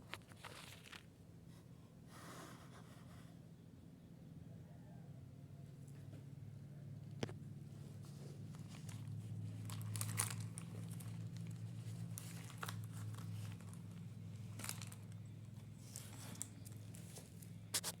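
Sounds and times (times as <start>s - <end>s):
material crinkling and rustling: 0.0s - 1.1s, 7.9s - 18.0s
steady low hum: 0.0s - 18.0s.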